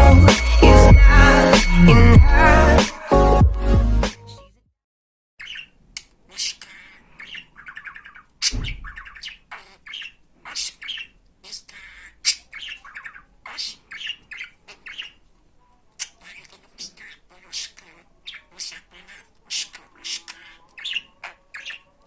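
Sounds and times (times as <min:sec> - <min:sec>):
loud sharp sound: 0:00.0 - 0:03.1
budgerigar chattering: 0:05.4 - 0:05.7, 0:06.3 - 0:15.2, 0:16.0 - 0:22.0.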